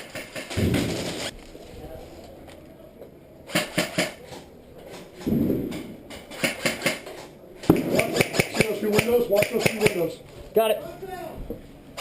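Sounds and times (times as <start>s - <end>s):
airsoft gun shots: 7.6s - 10.0s.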